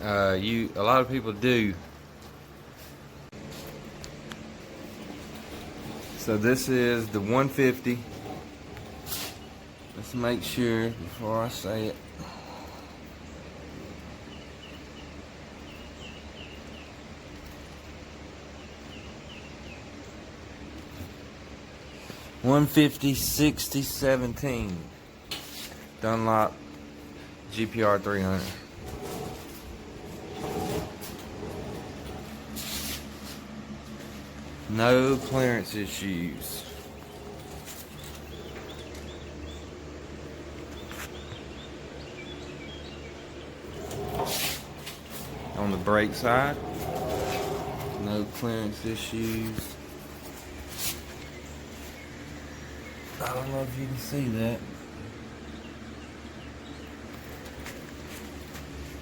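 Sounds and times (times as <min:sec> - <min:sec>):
low outdoor hum: 0:00.0 - 0:59.0
bird chirping: 0:12.3 - 0:20.3, 0:34.2 - 0:58.4.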